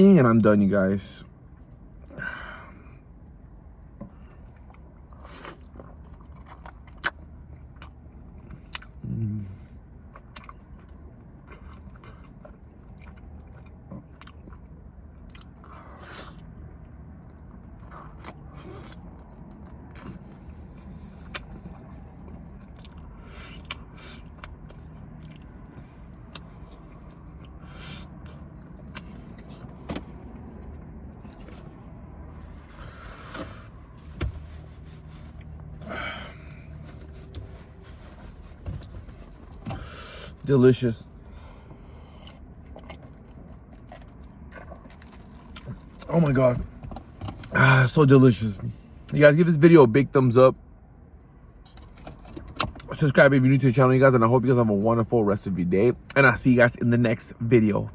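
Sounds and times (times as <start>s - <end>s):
wet chewing and lip-smacking: 3.8s - 9.0s, 9.6s - 31.9s, 42.0s - 46.1s.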